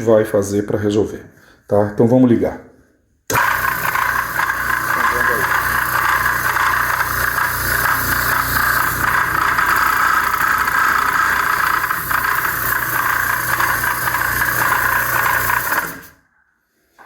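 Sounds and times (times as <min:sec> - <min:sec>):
air compressor running loudly: 0:03.3 - 0:16.2.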